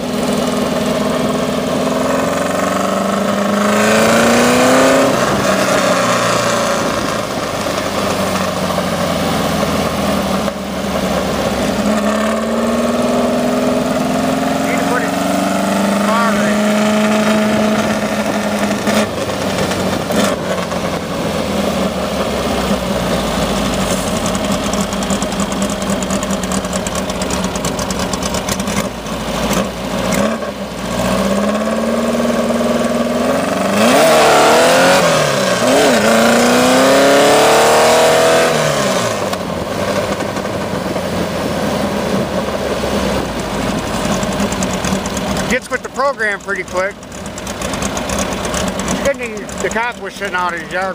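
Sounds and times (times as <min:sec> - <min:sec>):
buggy engine revving: 0:00.0 - 0:50.9
road noise: 0:00.0 - 0:50.9.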